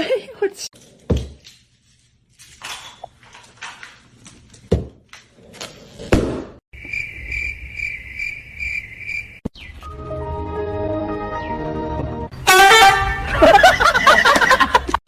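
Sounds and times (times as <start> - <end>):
high pulsing chirping: 6.8 - 9.8.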